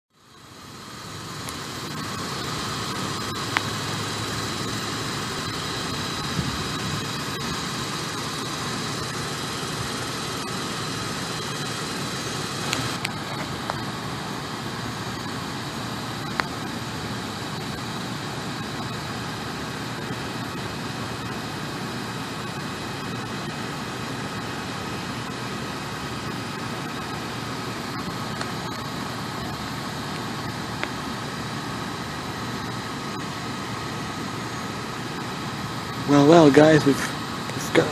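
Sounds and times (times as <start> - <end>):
mechanical hum and hiss: 0.3 - 37.9.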